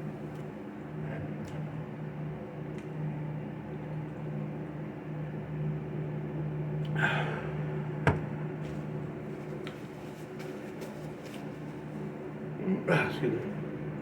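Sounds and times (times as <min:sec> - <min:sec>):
low electrical hum: 0:00.0 - 0:14.0
short rustle: 0:08.6 - 0:12.1.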